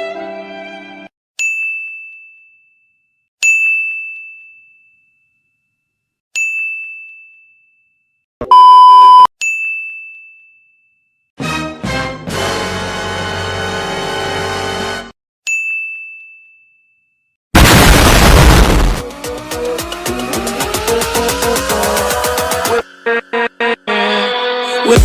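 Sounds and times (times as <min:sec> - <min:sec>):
loud flat beep: 0:08.4 - 0:09.3.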